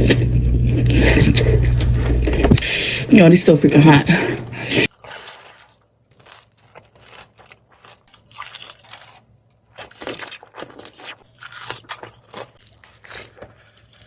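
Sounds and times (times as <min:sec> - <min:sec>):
crunching and chewing food: 0:04.8 - 0:14.0.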